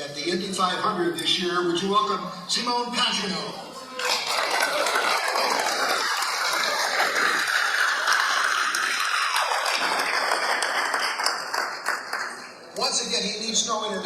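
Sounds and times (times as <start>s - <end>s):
crowd applauding: 3.9s - 12.8s.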